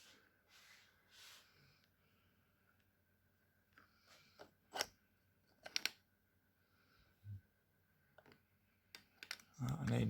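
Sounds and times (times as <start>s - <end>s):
plastic clicks and taps: 8.2s - 10.0s.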